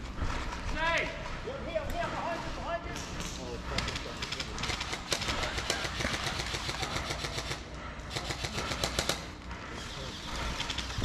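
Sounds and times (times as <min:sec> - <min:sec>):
airsoft guns firing in bursts: 0:03.9 - 0:09.3.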